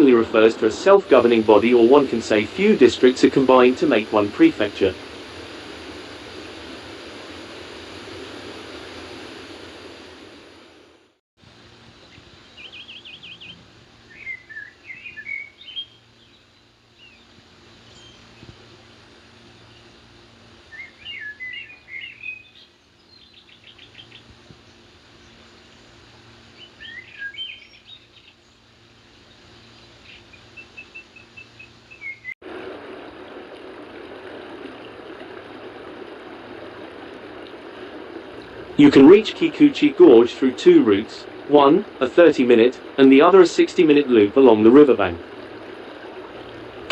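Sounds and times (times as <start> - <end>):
faint steady hum: 0.0 - 46.9
songbirds singing: 11.9 - 18.6, 19.4 - 32.4.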